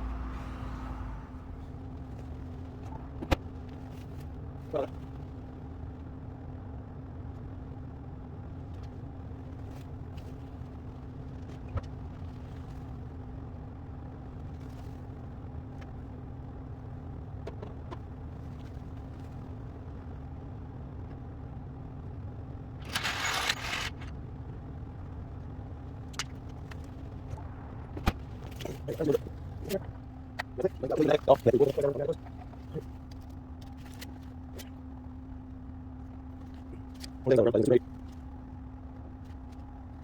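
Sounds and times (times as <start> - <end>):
faint constant tone: 0.0 - 40.0
low mechanical hum: 0.0 - 40.0
loud clatter: 22.8 - 24.1.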